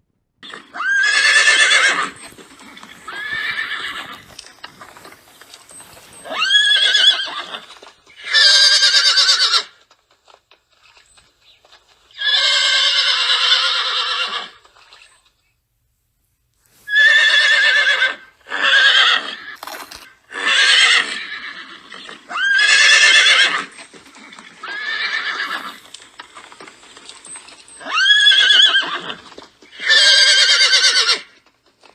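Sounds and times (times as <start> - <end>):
horse whinnying: 0.4 - 9.9, 12.1 - 15.2, 16.9 - 31.4.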